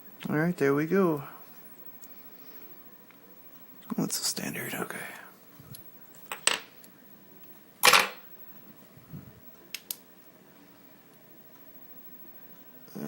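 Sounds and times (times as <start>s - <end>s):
metal parts clinking on hard surface: 7.8s - 8.2s.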